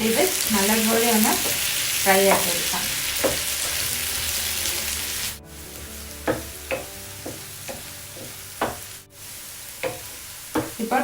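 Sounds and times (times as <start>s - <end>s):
banana frying sizzling: 0.0s - 11.0s
spatula striking pan: 3.2s - 3.9s, 6.2s - 9.0s, 9.8s - 10.8s.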